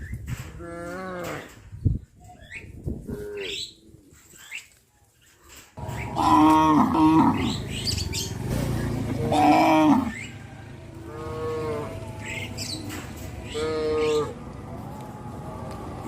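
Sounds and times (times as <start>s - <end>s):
cattle mooing: 5.8s - 7.7s, 9.2s - 10.2s, 11.0s - 12.2s, 13.4s - 14.4s.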